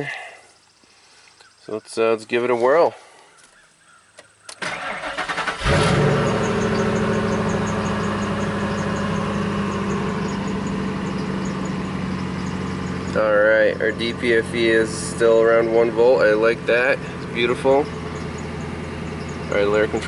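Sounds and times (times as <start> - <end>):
engine cranking and idling: 4.5 - 20.0.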